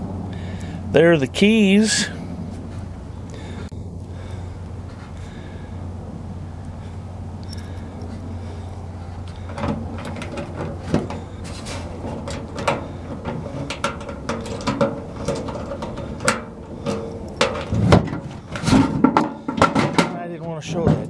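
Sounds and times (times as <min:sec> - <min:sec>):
steady low hum: 0:00.0 - 0:21.0
metal clicks knocks and scrapes: 0:08.8 - 0:20.2.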